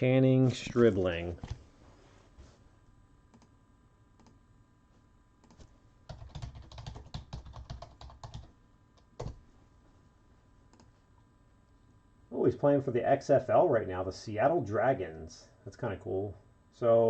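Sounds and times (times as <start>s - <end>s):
typing on a keyboard: 5.4s - 8.5s.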